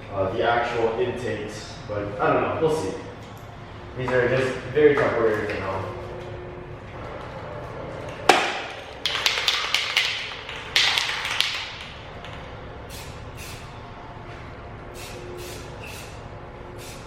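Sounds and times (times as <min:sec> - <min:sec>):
spray paint can hissing: 0:10.8 - 0:13.7, 0:14.9 - 0:16.2, 0:16.8 - 0:17.0.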